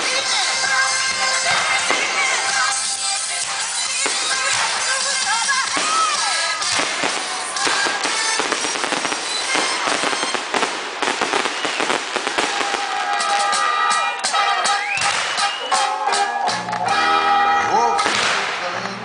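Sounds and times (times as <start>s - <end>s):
fireworks popping and crackling: 0.0s - 15.6s, 18.0s - 19.0s
music playing: 0.0s - 19.0s.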